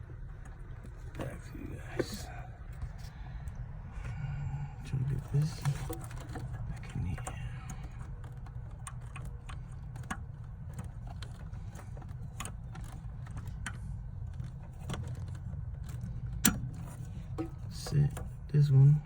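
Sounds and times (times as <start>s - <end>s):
steady low hum: 0.0s - 19.0s
clicks of parts being fitted: 5.6s - 18.5s.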